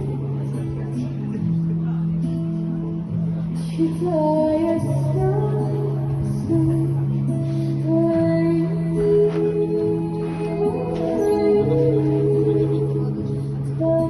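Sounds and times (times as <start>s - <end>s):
woman singing: 3.6s - 14.0s.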